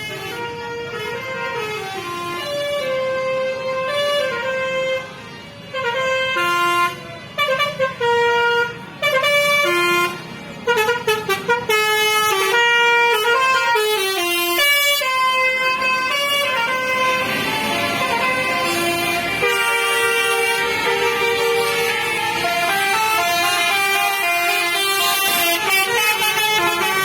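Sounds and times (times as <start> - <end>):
bus engine running: 0.0 - 27.0
multi-tone musical air horn: 0.0 - 27.0.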